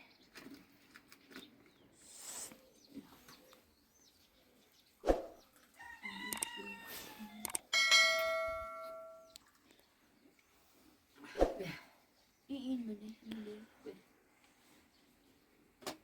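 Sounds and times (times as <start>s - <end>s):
rooster crowing: 5.8s - 7.6s
metal struck and ringing: 7.8s - 9.3s.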